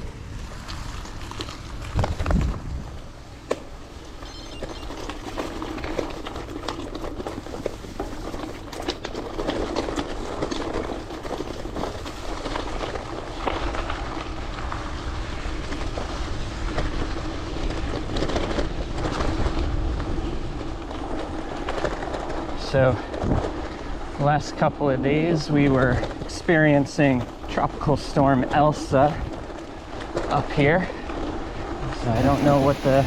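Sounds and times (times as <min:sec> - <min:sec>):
bike tyres rolling on road: 0:00.0 - 0:33.0
bike clicks and rattles: 0:00.2 - 0:33.0.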